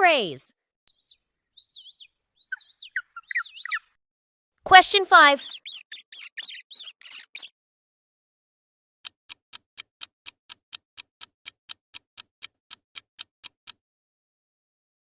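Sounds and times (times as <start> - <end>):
rat squeaking: 5.4 - 7.5
clock ticking: 9.0 - 13.8.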